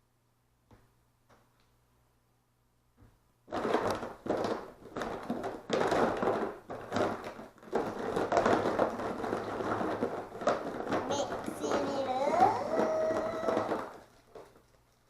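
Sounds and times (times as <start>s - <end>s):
rustling and crunching materials: 3.5s - 15.0s.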